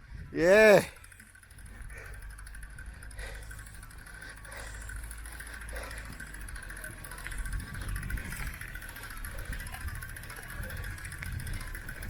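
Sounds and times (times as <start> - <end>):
wind rumble on microphone: 0.0 - 0.4, 6.9 - 12.0
bicycle tyres rolling on dirt: 0.0 - 12.0.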